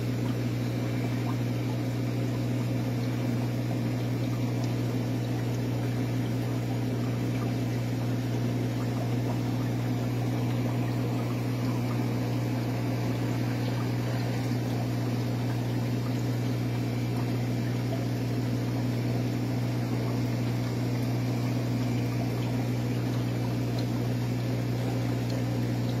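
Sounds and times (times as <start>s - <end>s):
aquarium pump humming: 0.0s - 26.0s
circulating water washing: 0.0s - 26.0s.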